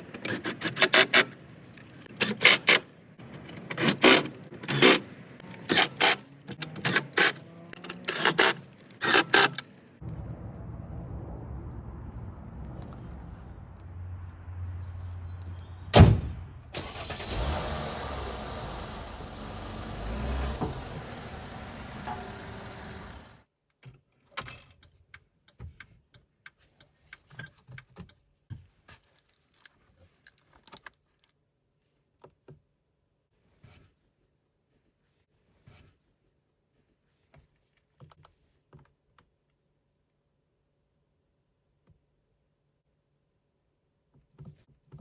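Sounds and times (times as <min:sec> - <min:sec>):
steady rushing noise: 0:10.0 - 0:14.1
loud sharp bang: 0:15.9 - 0:16.8.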